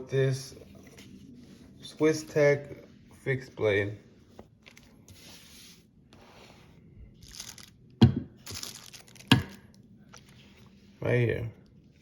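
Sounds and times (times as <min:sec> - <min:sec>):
packaging rubbing and rustling: 0:07.2 - 0:07.8, 0:08.4 - 0:10.8.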